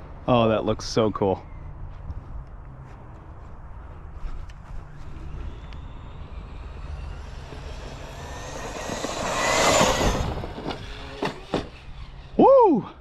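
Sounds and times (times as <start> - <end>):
rc truck motor whine: 4.5 - 13.0.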